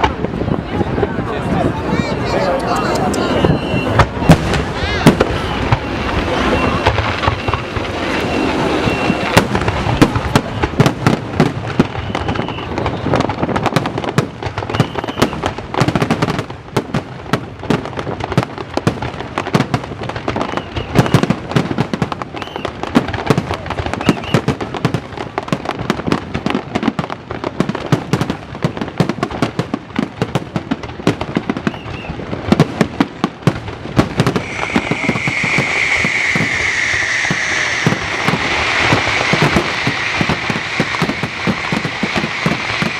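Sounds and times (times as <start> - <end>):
fireworks bangs and crackling: 0.0 - 42.9
high whistle: 3.2 - 4.4, 5.4 - 9.4, 11.9 - 12.8, 14.7 - 15.4, 24.0 - 24.4, 34.4 - 42.9.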